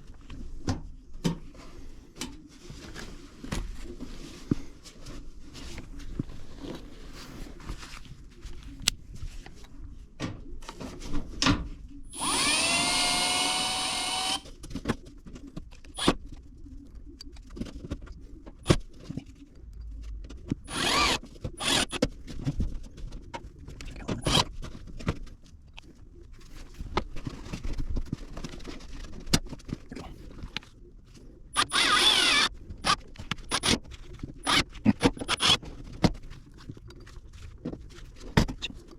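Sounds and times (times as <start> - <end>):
power drill whining: 12.1 - 14.4, 20.7 - 22.0, 31.6 - 33.8, 34.4 - 35.6.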